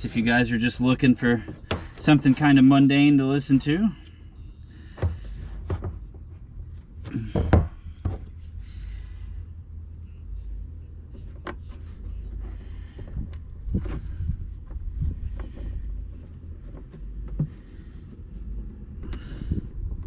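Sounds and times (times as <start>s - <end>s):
low steady rumble: 0.0s - 20.0s
tools knocking and clunking: 1.2s - 2.7s, 4.8s - 6.4s, 7.0s - 8.5s.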